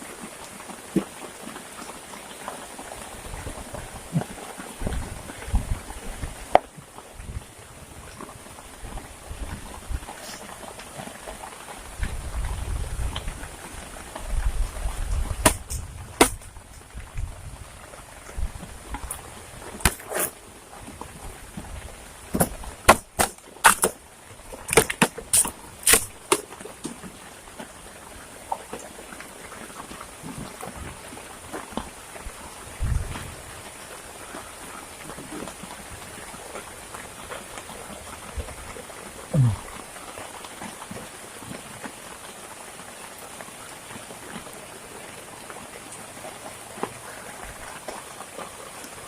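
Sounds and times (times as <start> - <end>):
rain dripping and pattering: 0.0 - 49.0
sharp woody cracks and knocks: 15.4 - 16.6, 19.8 - 20.4, 22.3 - 24.0, 24.6 - 27.1.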